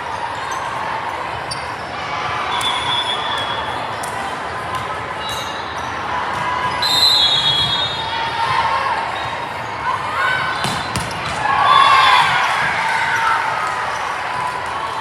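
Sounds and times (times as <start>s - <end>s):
volleyball being hit: 10.6s - 12.7s.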